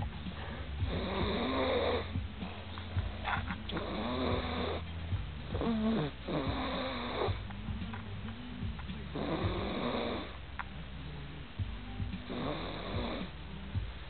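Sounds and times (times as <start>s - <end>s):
snoring: 0.0s - 7.5s, 9.0s - 10.4s, 12.2s - 13.4s.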